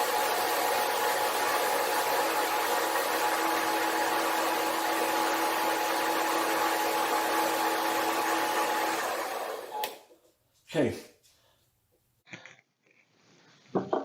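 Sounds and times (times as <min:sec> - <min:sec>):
lathe motor humming: 0:00.0 - 0:10.0.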